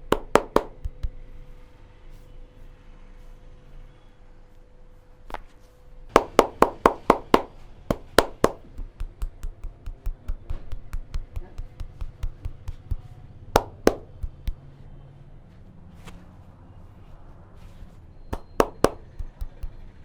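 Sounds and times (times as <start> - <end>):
hands slapping in massage: 0.0 - 1.3, 6.1 - 14.6, 18.4 - 20.0.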